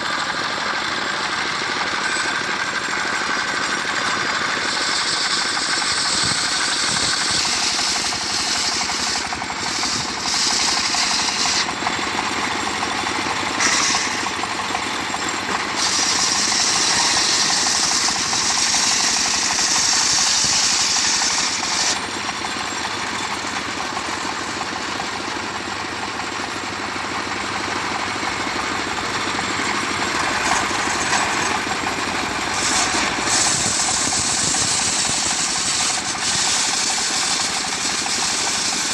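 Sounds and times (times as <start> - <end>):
circular sawmill sawing log: 0.0 - 38.9
high hissing sound: 32.4 - 38.9.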